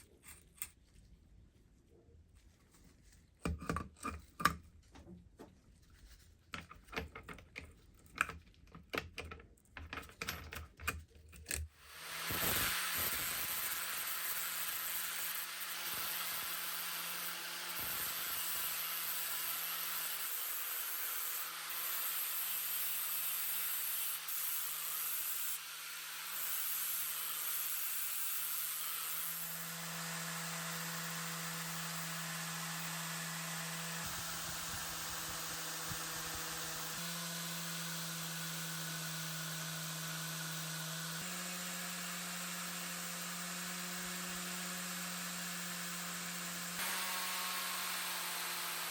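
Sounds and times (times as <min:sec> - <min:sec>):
electric grinder motor hum: 0:11.5 - 0:48.9.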